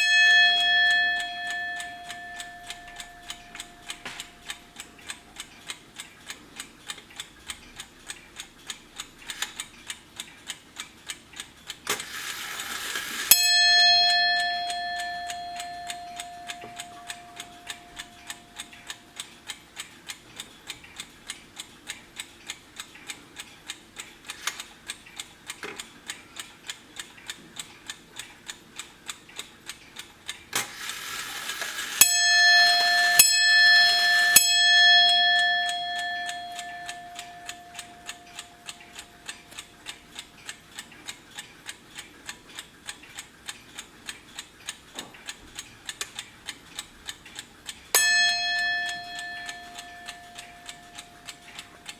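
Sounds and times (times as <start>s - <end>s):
hammer striking bell: 0.0s - 4.4s, 13.3s - 18.1s, 32.0s - 38.6s, 48.0s - 51.2s
alarm clock ticking fast: 0.0s - 51.9s
clock strike train whirring: 30.7s - 34.4s.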